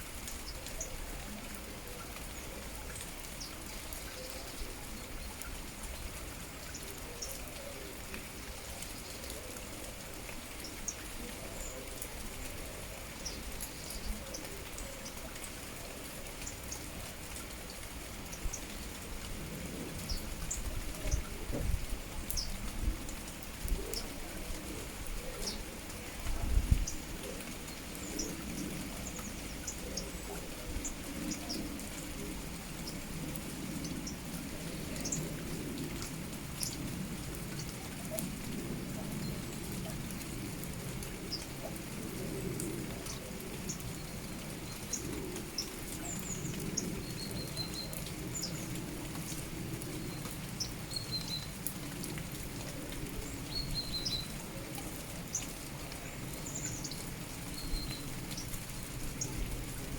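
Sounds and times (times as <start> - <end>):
rain drops ticking on a surface: 0.0 - 59.9
small birds chirping: 43.0 - 51.6, 53.1 - 59.5.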